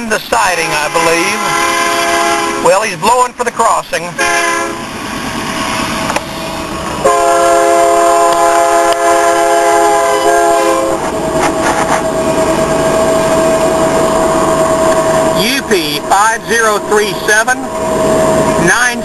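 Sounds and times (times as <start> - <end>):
train rumbling by: 0.0 - 19.0
locomotive air horn: 0.6 - 2.8, 4.2 - 4.9, 7.0 - 11.2.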